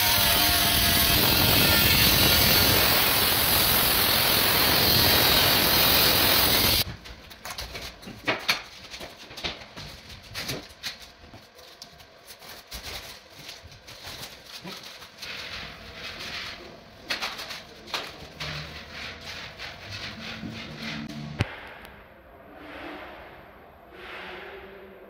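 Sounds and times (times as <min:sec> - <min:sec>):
power tool running: 0:00.0 - 0:06.8.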